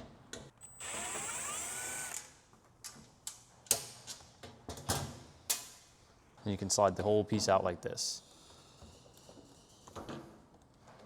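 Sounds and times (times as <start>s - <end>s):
power drill motor whine: 0.6s - 2.3s.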